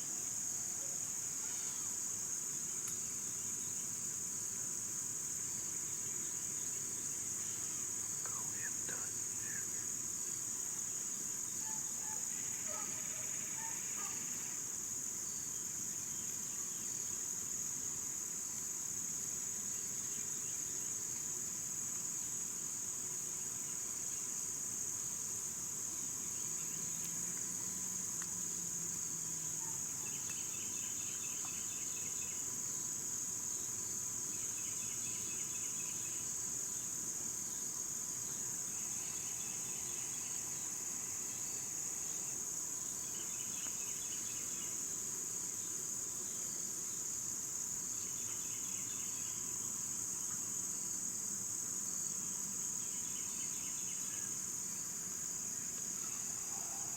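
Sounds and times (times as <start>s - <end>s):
crickets droning: 0.0s - 56.9s
short pulsed insect trills: 0.0s - 56.9s.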